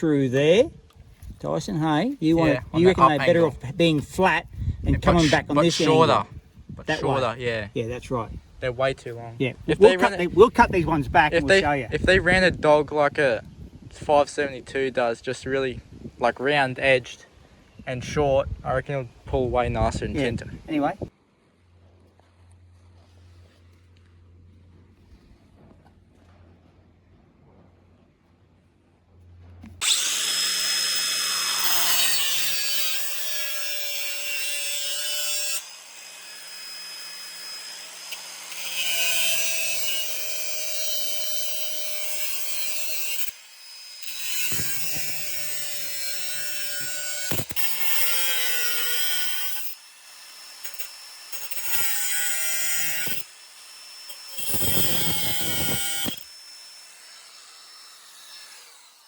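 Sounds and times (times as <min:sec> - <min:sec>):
power tool bursts: 0:29.8 - 0:59.0.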